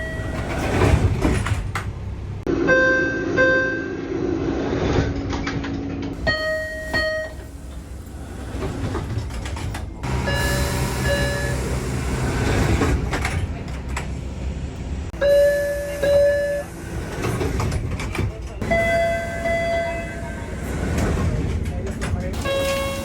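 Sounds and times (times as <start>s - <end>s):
subway door chime: 0.0s - 1.6s, 2.5s - 4.1s, 6.1s - 13.7s, 15.1s - 21.8s, 22.4s - 23.0s
train rumble and rattle: 0.0s - 23.0s.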